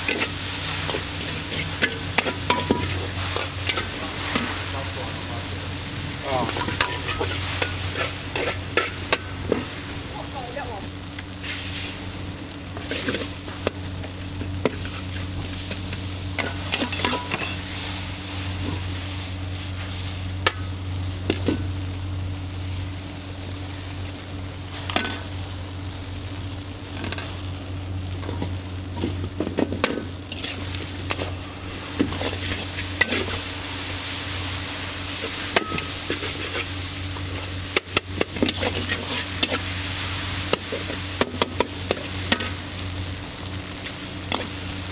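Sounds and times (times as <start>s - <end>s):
metal spatula scraping wok: 0.0s - 5.5s, 6.1s - 9.9s, 12.8s - 13.5s, 14.7s - 20.2s, 29.0s - 42.6s, 43.8s - 44.9s
food sizzling in a wok: 0.0s - 44.9s
steady low hum: 0.0s - 44.9s.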